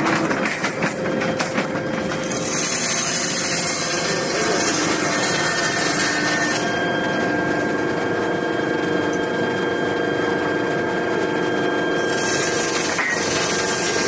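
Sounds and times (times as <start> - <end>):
machine hum: 0.0 - 14.0.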